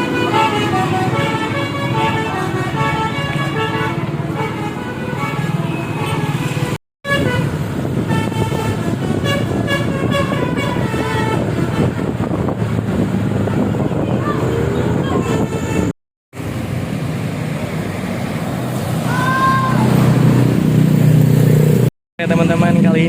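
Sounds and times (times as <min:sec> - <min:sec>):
bus multi-tone air horn melody: 0:00.0 - 0:12.3, 0:15.2 - 0:16.0
bus engine running: 0:00.0 - 0:23.0.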